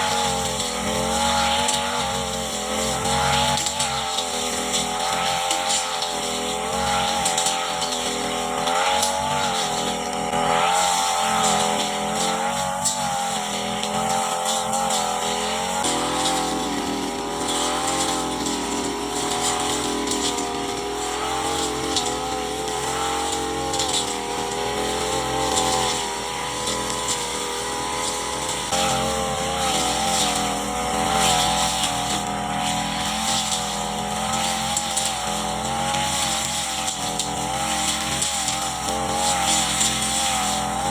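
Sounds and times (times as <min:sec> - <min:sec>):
brush cutter engine cutting grass: 0:00.0 - 0:40.9.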